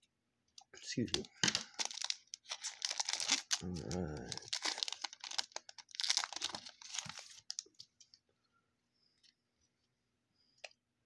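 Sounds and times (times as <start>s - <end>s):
plastic wrapper crinkling and tearing: 1.1s - 7.9s.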